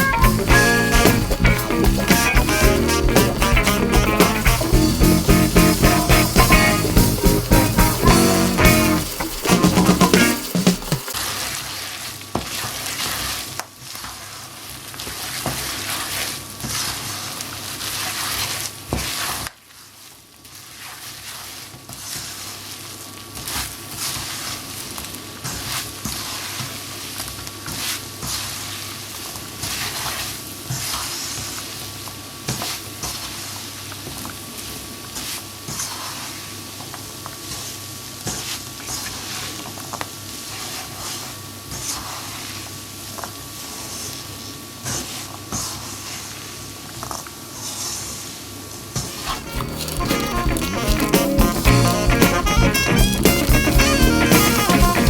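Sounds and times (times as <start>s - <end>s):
sugar syrup sizzling in a pan: 0.2s - 11.3s
spoon and nuts scraping a pan: 49.1s - 52.0s.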